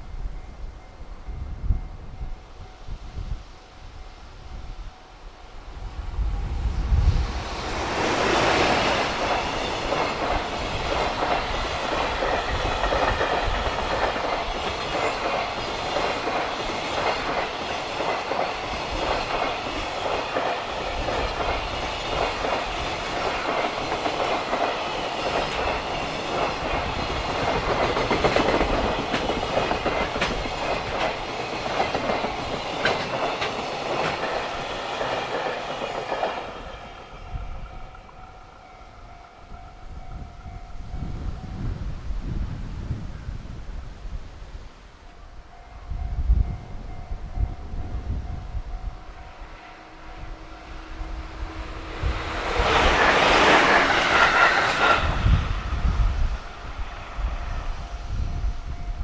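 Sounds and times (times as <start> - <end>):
freight train wheels clattering: 7.2 - 38.6, 47.4 - 57.8.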